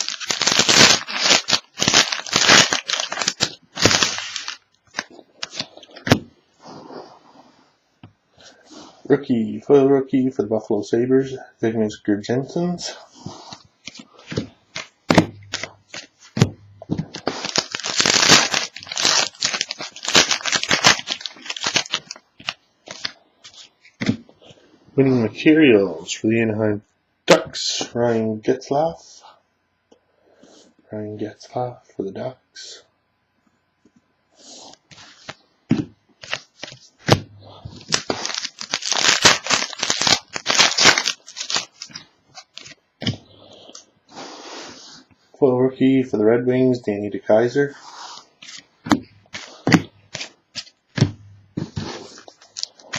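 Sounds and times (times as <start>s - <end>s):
wrapper tearing and crinkling: 0.0s - 6.1s, 14.8s - 16.1s, 17.1s - 23.7s, 36.2s - 42.8s, 51.8s - 52.9s.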